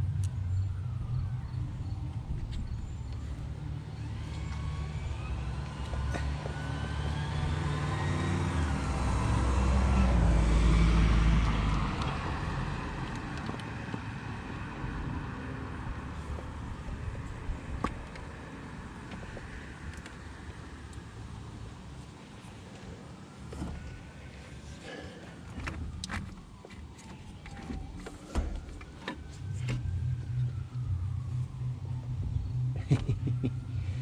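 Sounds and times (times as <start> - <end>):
vehicle passing by: 0.0 - 19.8.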